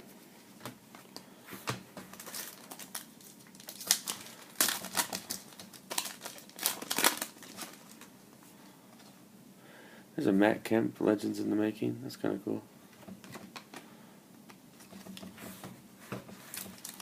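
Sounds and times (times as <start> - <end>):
foil wrapper crinkling and tearing: 2.1 - 8.1, 16.5 - 17.0.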